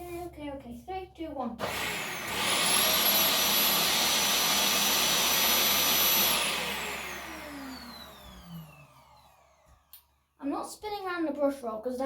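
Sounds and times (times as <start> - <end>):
vacuum cleaner motor whining: 1.6 - 10.2.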